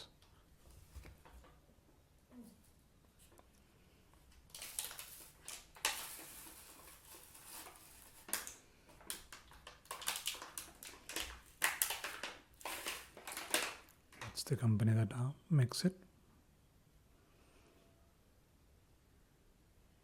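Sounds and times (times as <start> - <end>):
packaging rustling: 4.3 - 14.5.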